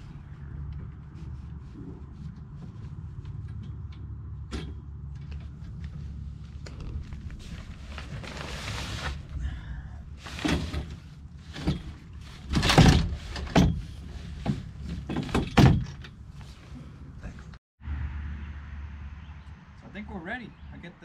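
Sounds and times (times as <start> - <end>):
rustling scrape: 5.6 - 9.4, 10.2 - 15.1
boat gear clunking and knocking: 10.3 - 16.3.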